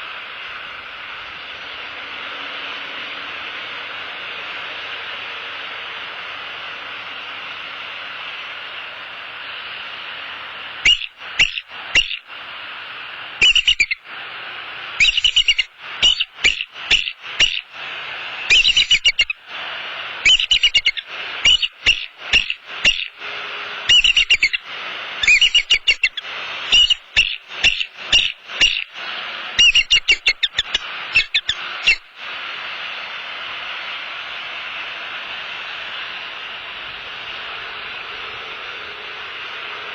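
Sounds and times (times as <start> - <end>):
steady hiss: 0.0 - 39.9
eagles high piping chatter: 10.9 - 12.3, 13.4 - 14.0, 15.0 - 19.6, 20.2 - 32.1.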